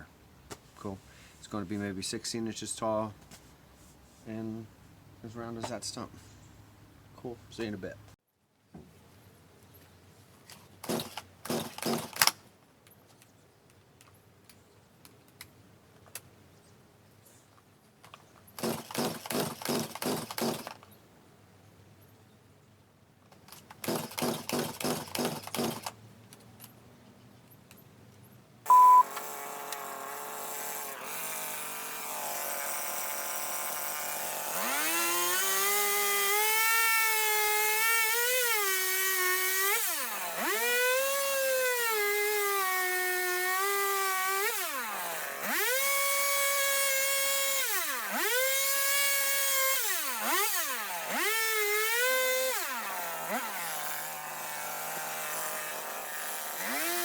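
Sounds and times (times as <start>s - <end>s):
chainsaw idling and revving: 10.8s - 12.4s, 18.6s - 20.8s, 23.7s - 26.0s, 29.1s - 57.0s
chainsaw starter cord pulls: 10.8s - 12.4s, 18.6s - 20.9s, 23.3s - 26.0s, 29.0s - 31.3s, 33.6s - 57.0s
short sharp beep: 28.7s - 29.1s.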